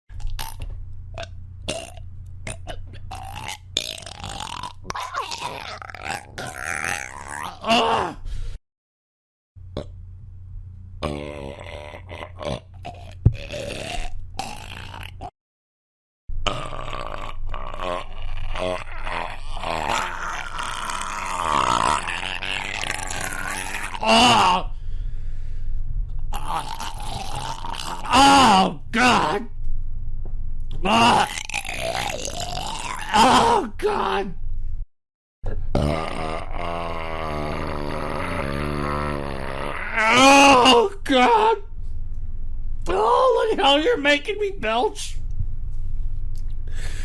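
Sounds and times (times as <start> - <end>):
steady low hum: 0.1 - 6.6, 9.6 - 15.1, 16.3 - 34.9, 35.5 - 47.0
person belching: 1.7 - 8.2, 11.0 - 15.3, 16.4 - 24.7, 26.3 - 29.5, 30.8 - 34.2, 35.7 - 41.6.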